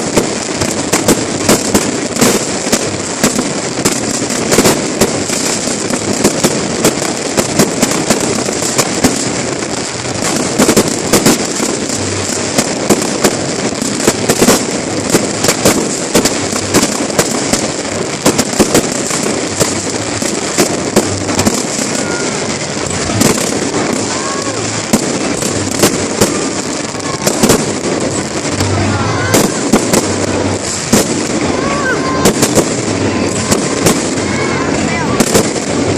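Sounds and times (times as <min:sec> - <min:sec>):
fireworks bangs and crackles: 0:00.0 - 0:35.9
rumbling hiss: 0:00.0 - 0:35.9.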